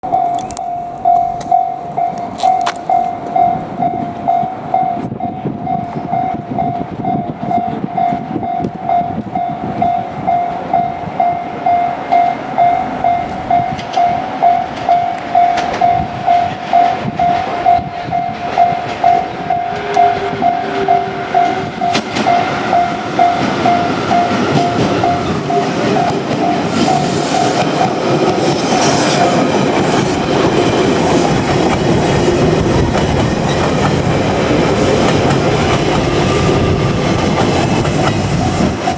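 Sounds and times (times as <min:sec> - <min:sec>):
level crossing warning bell: 0:00.0 - 0:27.6
electric train rolling: 0:00.0 - 0:38.9.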